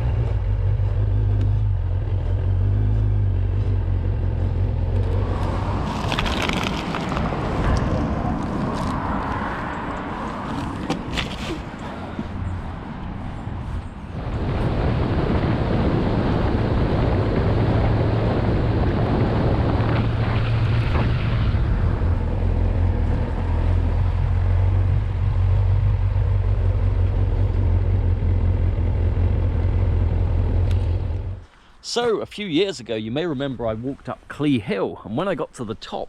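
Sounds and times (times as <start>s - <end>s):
motorcycle engine running: 0.0s - 5.8s
wind rushing over microphone: 4.6s - 25.5s.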